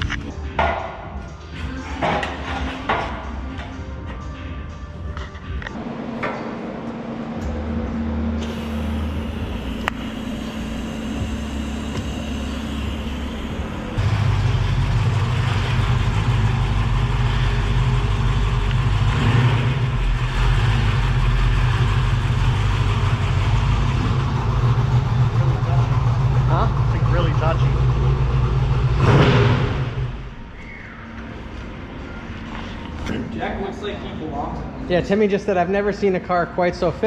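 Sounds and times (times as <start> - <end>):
car engine running: 5.7 - 30.5.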